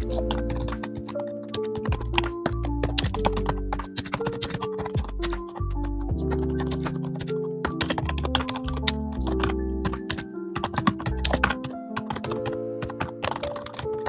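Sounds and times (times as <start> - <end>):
mechanical keyboard typing: 0.0 - 14.0
background music with bass: 1.9 - 3.9, 5.0 - 6.9.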